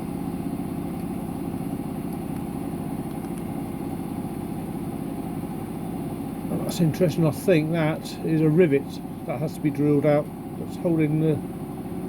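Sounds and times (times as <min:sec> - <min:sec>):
engine running with low pulsing: 0:00.0 - 0:12.0.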